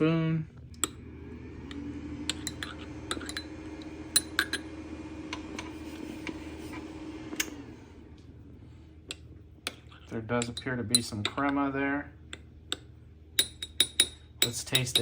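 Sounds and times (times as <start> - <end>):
steady low hum: 0.0 - 15.0
spoon clinking against cup: 2.3 - 3.5, 13.4 - 15.0.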